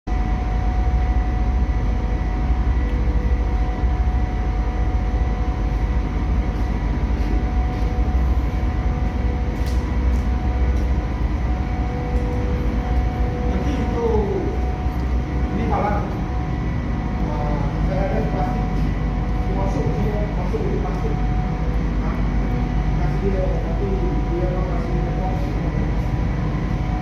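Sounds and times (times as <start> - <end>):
diesel generator droning: 0.1 - 27.0.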